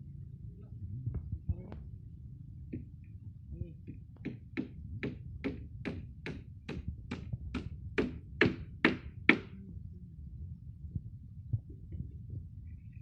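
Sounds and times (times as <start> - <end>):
hammer strikes: 3.9 - 9.5.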